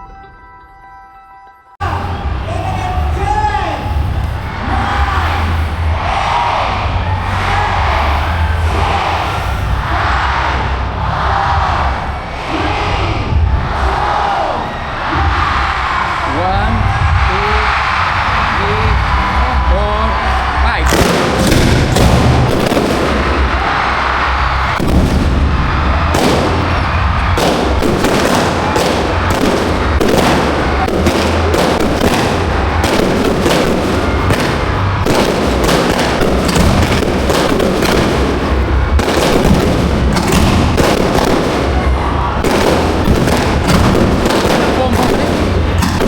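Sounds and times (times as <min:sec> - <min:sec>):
heavy low rumble: 0:15.2 - 0:46.0
fireworks bangs: 0:17.0 - 0:46.0.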